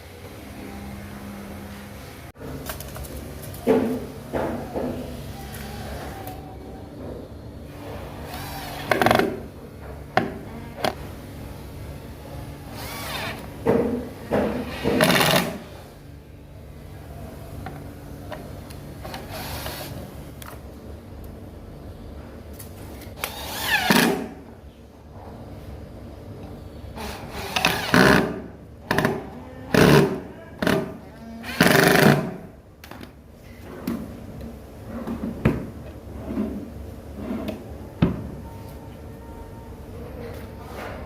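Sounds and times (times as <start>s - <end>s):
power tool bursts: 12.8s - 13.4s.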